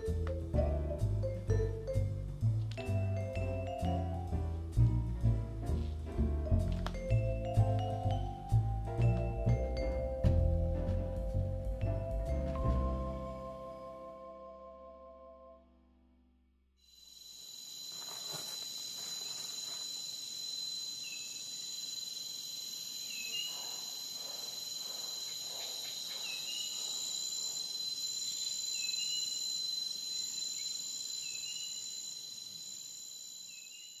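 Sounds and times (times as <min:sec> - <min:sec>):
insects trilling: 0:16.8 - 0:34.0.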